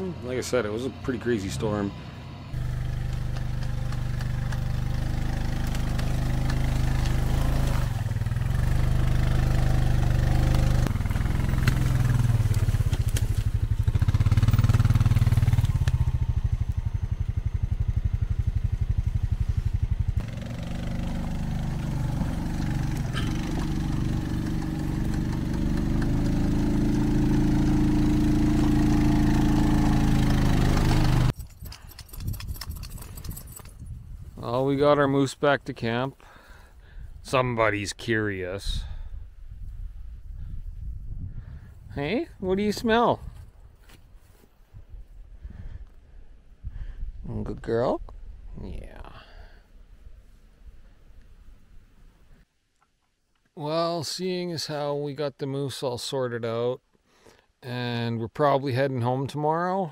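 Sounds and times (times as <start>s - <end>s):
machinery engine running: 0.0s - 33.6s.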